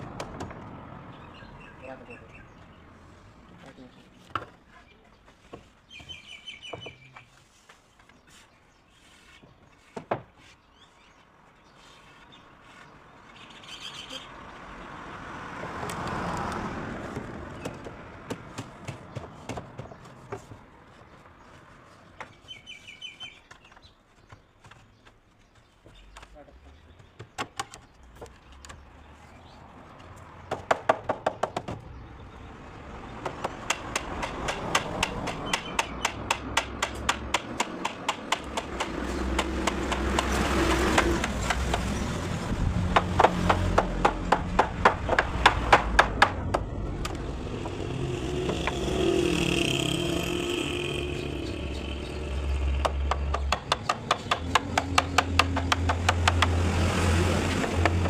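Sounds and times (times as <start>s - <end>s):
rapid sharp knocks: 33.2s - 41.9s, 42.9s - 46.7s, 52.8s - 56.6s.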